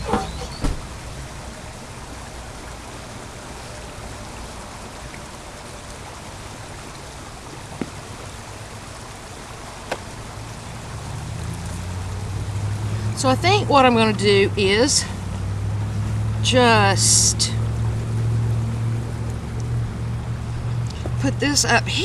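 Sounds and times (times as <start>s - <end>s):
creek water running: 0.0s - 22.0s
low traffic rumble: 0.0s - 22.0s
faint clicks: 17.6s - 21.2s.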